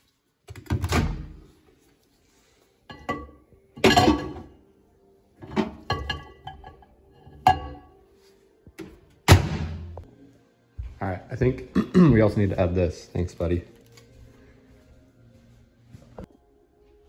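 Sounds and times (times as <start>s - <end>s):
dishes and glassware clinking: 2.9s - 4.6s, 5.4s - 8.0s.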